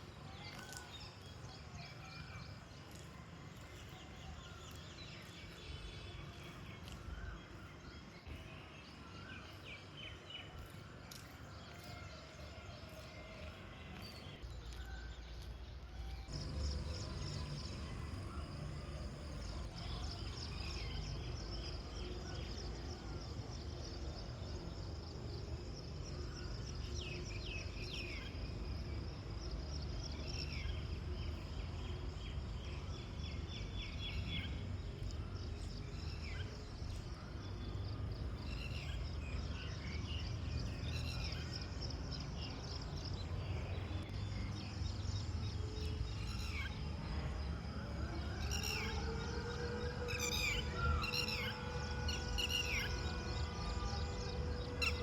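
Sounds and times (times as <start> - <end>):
insects trilling: 16.3 - 21.5.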